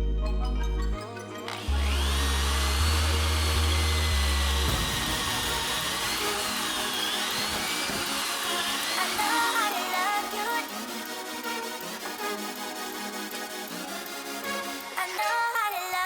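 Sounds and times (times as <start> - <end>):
background music with heavy bass: 0.0 - 16.0
electric drill whining into metal: 1.5 - 10.7.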